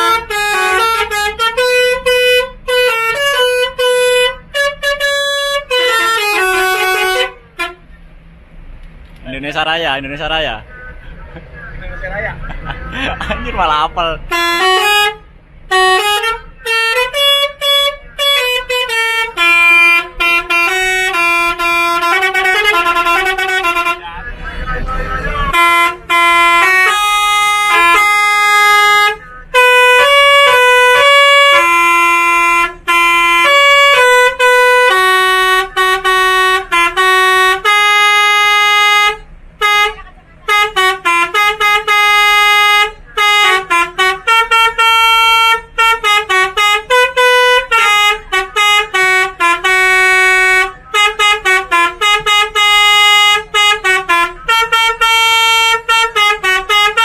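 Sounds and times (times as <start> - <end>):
tuned air horns playing tune: 0.0 - 7.9, 14.3 - 24.0, 25.4 - 57.0.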